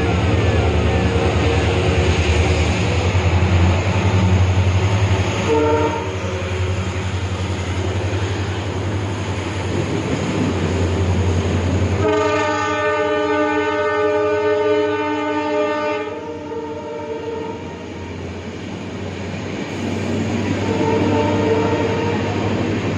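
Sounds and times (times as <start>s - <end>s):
diesel locomotive engine rumbling: 0.0s - 22.9s
locomotive horn blast: 5.4s - 6.5s, 11.9s - 17.9s, 20.4s - 22.5s.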